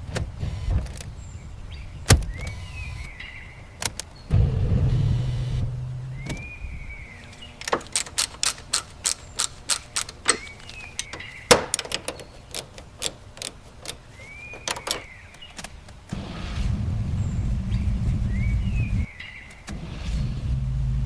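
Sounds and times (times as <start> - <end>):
short squeaks: 5.4 - 16.5
metallic clicks and clinks: 7.6 - 15.1.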